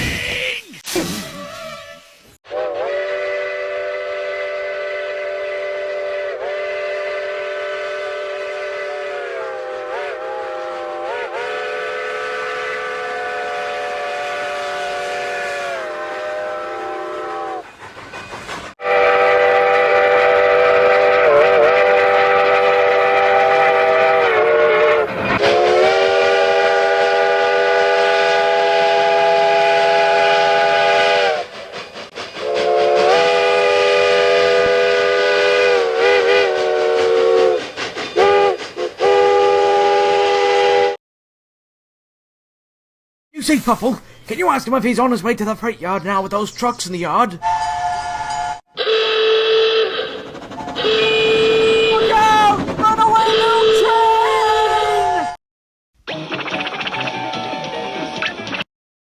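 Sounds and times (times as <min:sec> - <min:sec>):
chime train whistle blasts: 0:18.8 - 0:31.5, 0:32.4 - 0:41.0, 0:47.4 - 0:52.3, 0:53.2 - 0:55.4.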